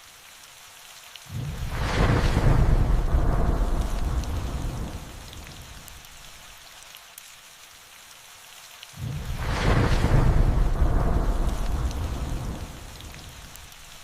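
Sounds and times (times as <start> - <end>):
steady rain: 0.0 - 14.0
thunder rumbling: 1.3 - 6.1, 9.0 - 14.0.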